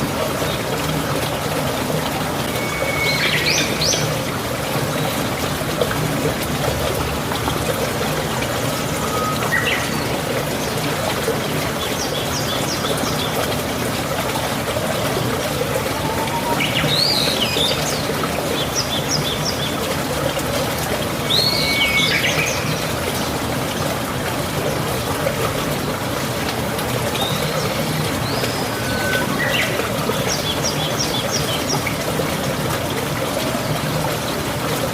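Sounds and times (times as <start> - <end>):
running water: 0.0 - 34.9
birds chirping and trilling: 15.8 - 18.1, 27.2 - 31.6.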